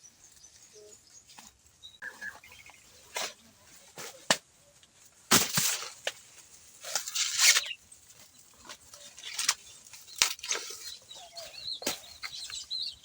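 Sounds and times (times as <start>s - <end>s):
dry corn leaves crunching: 5.1s - 12.6s.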